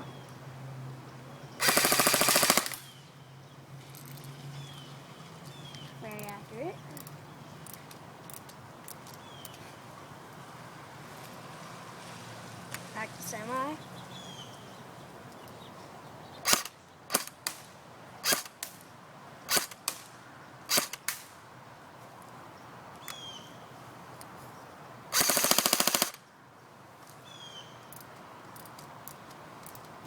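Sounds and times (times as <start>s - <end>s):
airsoft gun rapid burst: 1.6s - 2.9s, 25.2s - 26.2s
airsoft gun single shots: 1.6s - 2.9s, 18.2s - 18.8s, 19.5s - 20.1s.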